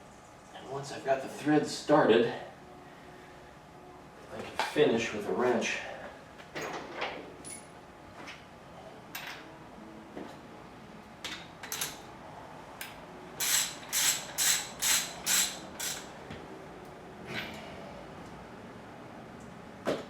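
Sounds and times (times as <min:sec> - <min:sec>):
ratchet wrench clicking: 0:13.4 - 0:16.1.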